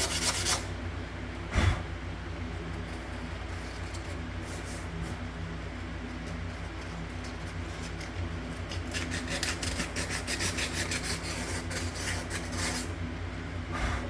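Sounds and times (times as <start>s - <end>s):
rubbing strokes on sink drain: 6.2s - 13.0s.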